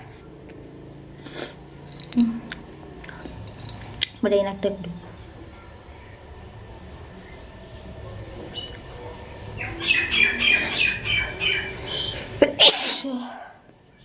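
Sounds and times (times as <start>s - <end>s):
small bird chirping: 9.5s - 12.2s.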